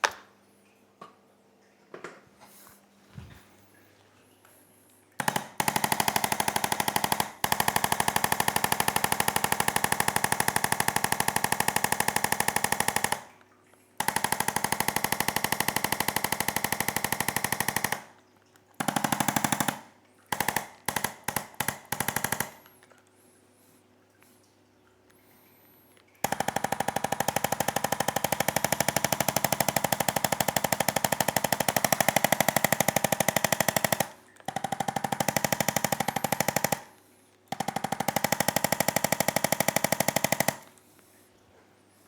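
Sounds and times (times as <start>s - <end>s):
massage gun hammering: 26.3s - 37.0s.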